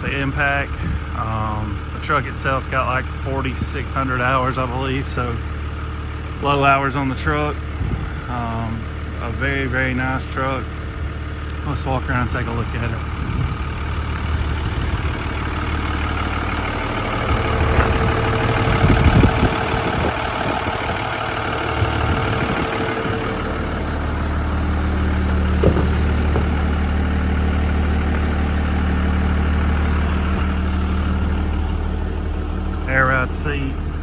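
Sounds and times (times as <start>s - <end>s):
diesel engine idling: 0.0s - 34.0s
handling knocks: 21.4s - 29.7s.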